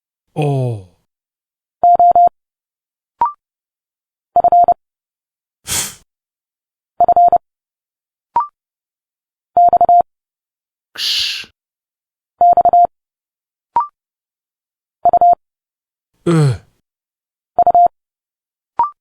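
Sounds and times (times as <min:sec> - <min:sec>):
spoken consonant hiss: 0:11.0 - 0:11.5
morse code beeps: 0:12.4 - 0:12.9.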